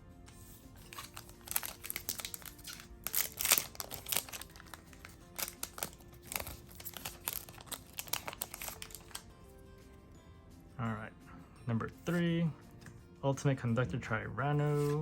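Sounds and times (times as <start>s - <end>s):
foil wrapper crinkling and tearing: 0.8s - 9.2s.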